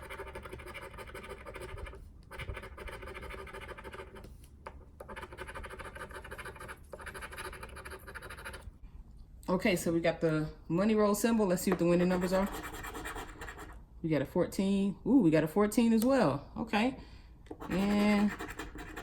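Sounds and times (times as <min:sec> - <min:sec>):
fingernail scratching ticket: 0:00.0 - 0:08.7, 0:12.0 - 0:13.8, 0:17.5 - 0:19.0.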